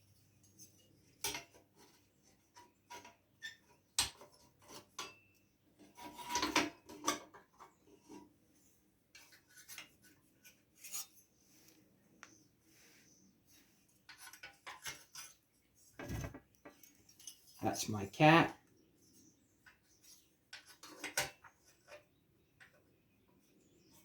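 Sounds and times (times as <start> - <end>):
metal parts and tools clinking: 16.2 - 17.6.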